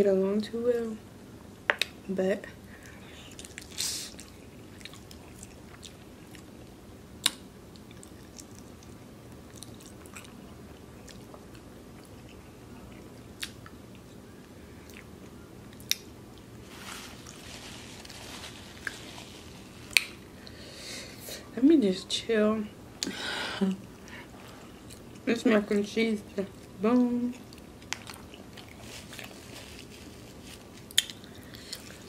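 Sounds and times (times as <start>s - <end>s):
person chewing: 2.8s - 17.4s, 23.8s - 25.2s, 26.5s - 32.0s.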